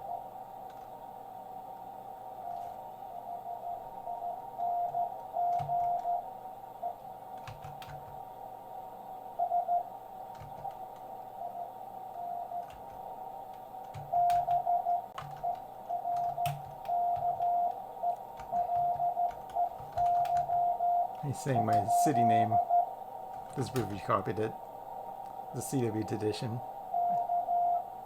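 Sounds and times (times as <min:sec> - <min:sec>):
morse code tone beeping: 0:03.2 - 0:06.2, 0:09.4 - 0:09.9, 0:11.4 - 0:12.7, 0:14.1 - 0:22.9, 0:26.9 - 0:28.0
radio hiss: 0:20.4 - 0:28.0.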